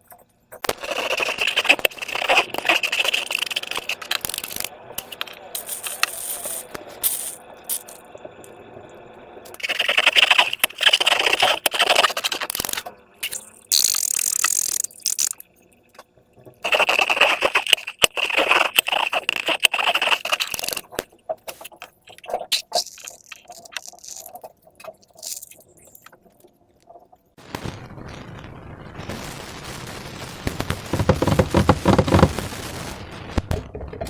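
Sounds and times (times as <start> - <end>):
slime crackling and popping: 0.6 - 7.9, 16.6 - 25.7.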